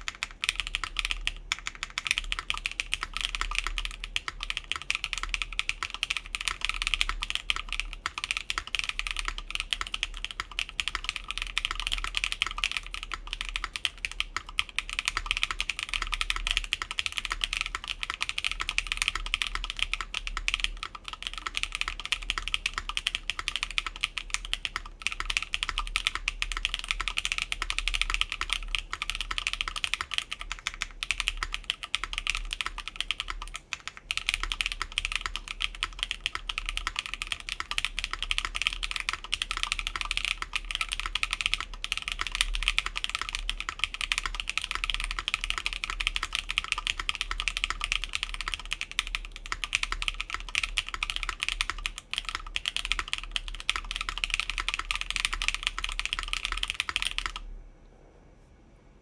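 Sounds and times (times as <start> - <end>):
fast mechanical keyboard typing: 0.0 - 57.4.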